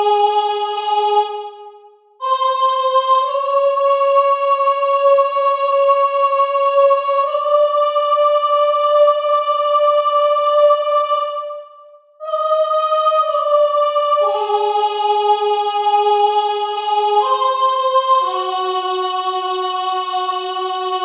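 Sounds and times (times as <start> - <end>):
layered soprano singing held notes: 0.0 - 21.0.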